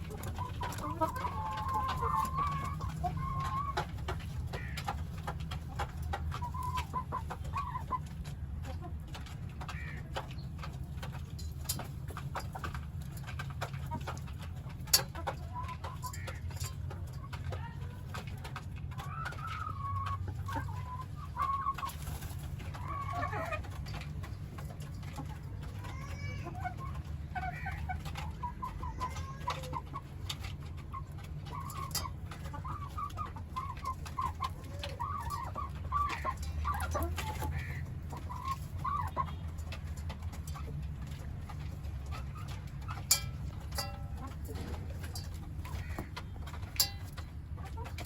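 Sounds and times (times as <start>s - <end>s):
chickens clucking: 0.0s - 48.0s.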